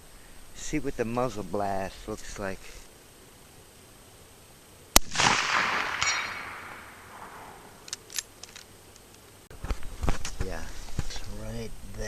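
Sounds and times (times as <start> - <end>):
rifle shot with rolling echo: 4.9 - 7.9.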